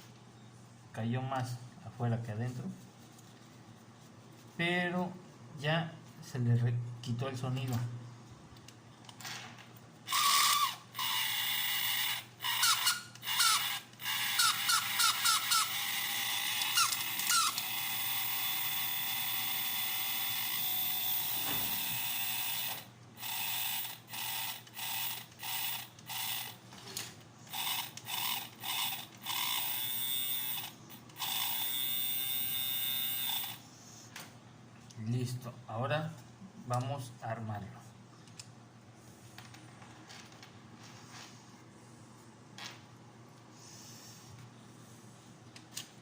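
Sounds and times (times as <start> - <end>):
toy motor ratcheting whir: 10.1 - 26.6, 27.5 - 33.6.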